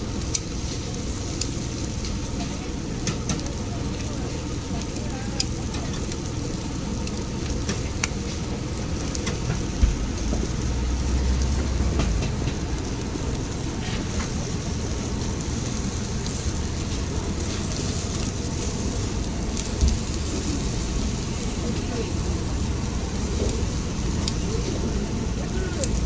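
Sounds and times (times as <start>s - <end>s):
meat sizzling on a grill: 0.0s - 26.0s
low rumble: 8.4s - 17.3s.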